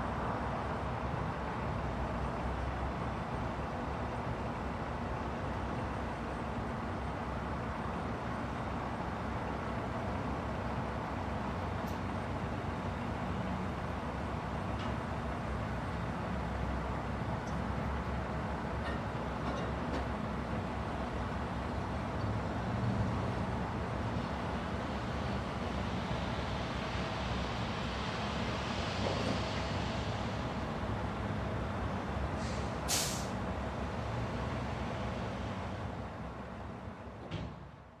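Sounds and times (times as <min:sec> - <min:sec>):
short sharp hiss: 0:32.4 - 0:33.4.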